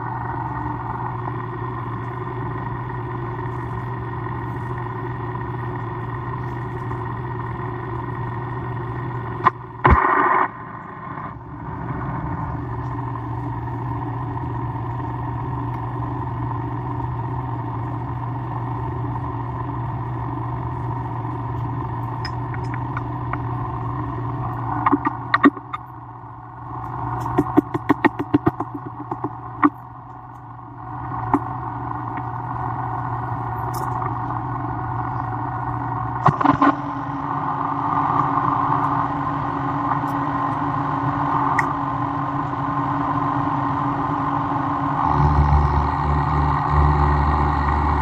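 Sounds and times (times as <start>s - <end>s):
machine tool motor humming: 0.0s - 48.0s
sharp clicks and clatters: 22.1s - 23.5s, 24.4s - 25.9s, 26.8s - 30.5s.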